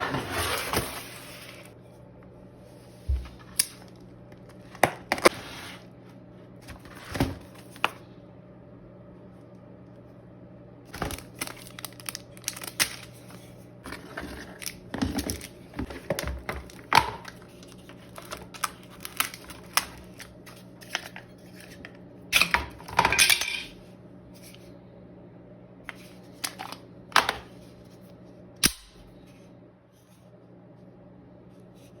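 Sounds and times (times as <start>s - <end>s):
package handling clicks and rustles: 3.1s - 5.4s, 10.9s - 22.9s, 25.9s - 27.6s
packaging ripping: 10.9s - 13.5s, 14.4s - 21.1s.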